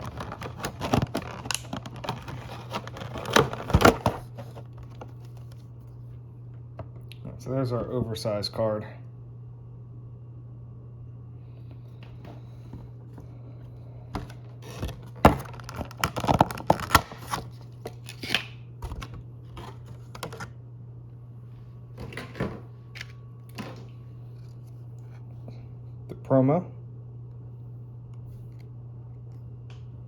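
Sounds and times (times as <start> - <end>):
cardboard packaging clicks and rustles: 0.0 - 5.7, 14.2 - 20.5
steady low hum: 0.0 - 30.0.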